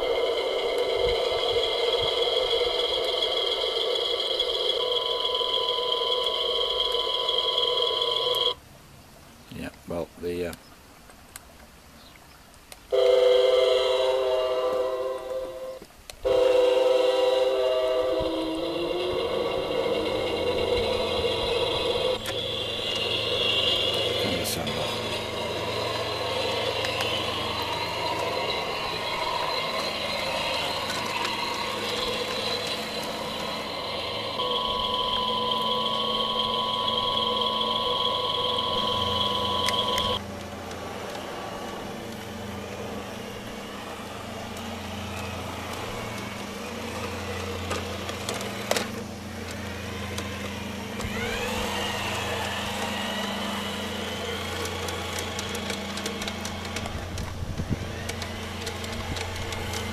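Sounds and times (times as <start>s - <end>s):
engine droning: 0.0s - 8.6s, 12.9s - 59.9s
rising glides: 0.0s - 8.6s, 12.9s - 59.9s
two-pitch tone: 33.7s - 40.2s.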